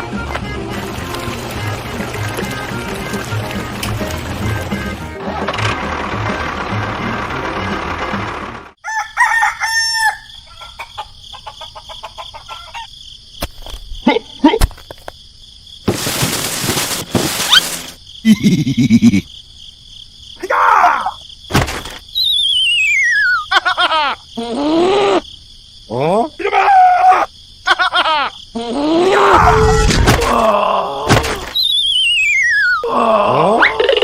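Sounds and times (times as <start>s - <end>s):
rooster crowing: 8.8s - 12.9s
falling whistle-like tone: 22.2s - 23.4s, 31.6s - 32.8s.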